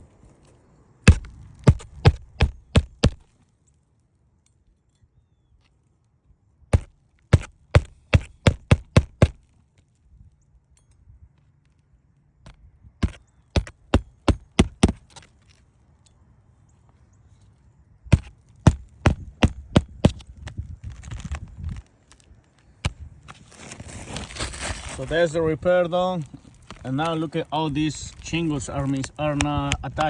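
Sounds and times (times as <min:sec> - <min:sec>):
hammer striking roofing nails: 0:01.1 - 0:03.3, 0:06.7 - 0:09.4, 0:13.0 - 0:15.1, 0:18.1 - 0:20.2.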